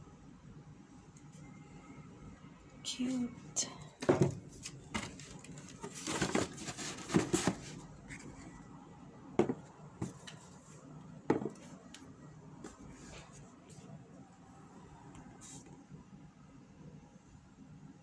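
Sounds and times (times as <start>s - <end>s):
rustling: 4.6s - 8.6s
knocks and taps of shoe box: 9.4s - 10.2s, 11.3s - 11.6s.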